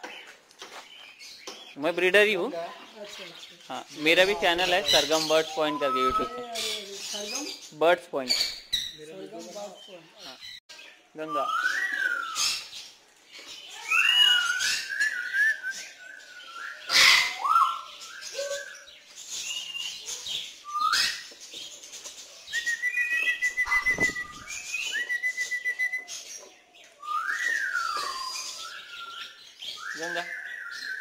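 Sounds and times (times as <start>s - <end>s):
parrot squawk: 16.9s - 17.7s
parrot whistling: 22.6s - 26.1s.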